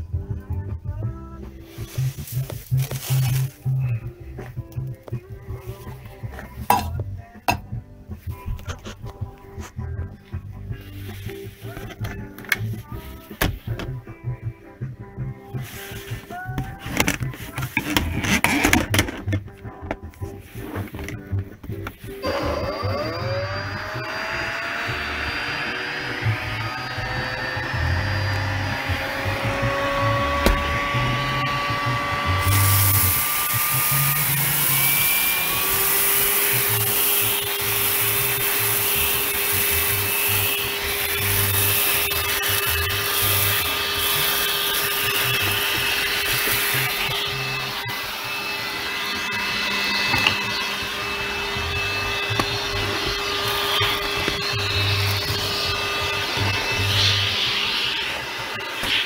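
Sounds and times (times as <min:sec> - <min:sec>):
vacuum cleaner motor: 0:22.2 - 0:59.0
airy suction hiss: 0:32.4 - 0:47.1, 0:53.4 - 0:59.0.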